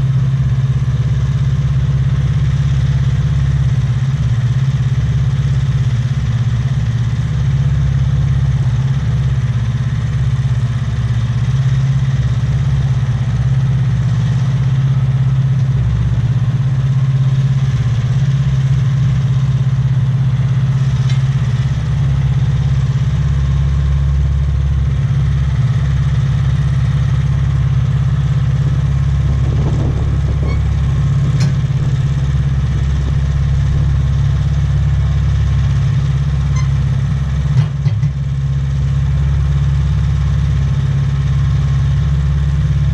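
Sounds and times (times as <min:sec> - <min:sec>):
sawmill engine running: 0:00.0 - 0:42.9
light rattle: 0:29.2 - 0:34.0.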